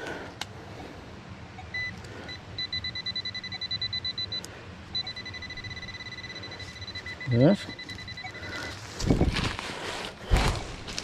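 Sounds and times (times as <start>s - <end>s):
metal detector beeping: 1.6s - 9.3s.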